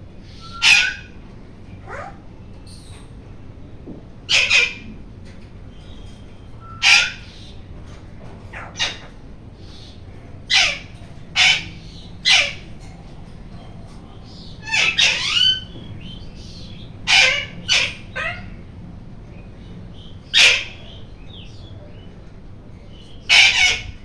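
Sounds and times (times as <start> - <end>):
parrot calling: 0.3 - 1.2, 1.8 - 2.2, 4.3 - 4.9, 6.6 - 7.6, 8.5 - 9.2, 10.5 - 12.8, 14.3 - 18.7, 20.0 - 21.5, 23.3 - 24.0.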